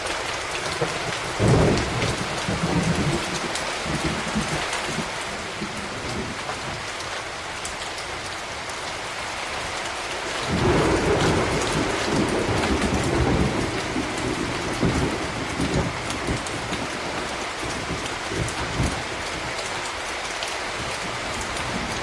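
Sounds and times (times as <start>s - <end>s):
thunder rumbling: 0.0s - 6.8s, 10.4s - 19.9s
steady rain: 0.0s - 22.0s.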